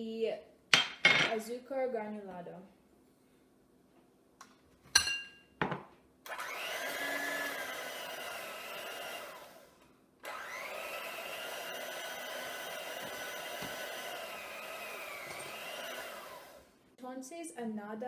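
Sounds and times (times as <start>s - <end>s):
electric mixer running: 6.3s - 16.8s.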